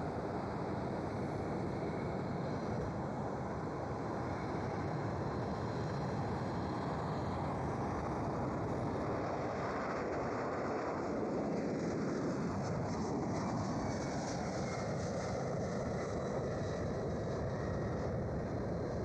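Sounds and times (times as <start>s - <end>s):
jet engine rumble: 0.0s - 19.0s.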